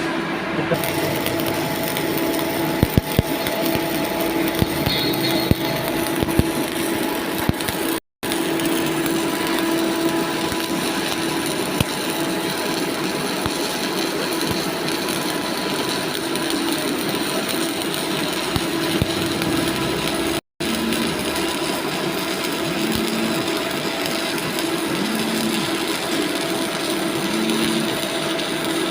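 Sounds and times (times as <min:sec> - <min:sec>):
steady hum: 0:00.0 - 0:12.8
arc welding crackling hiss: 0:00.7 - 0:28.9.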